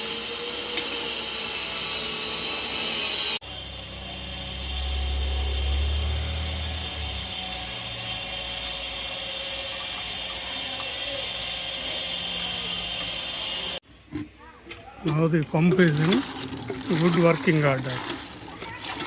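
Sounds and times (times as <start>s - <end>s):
electric motor whining: 1.8s - 13.8s
low hum: 3.7s - 7.9s.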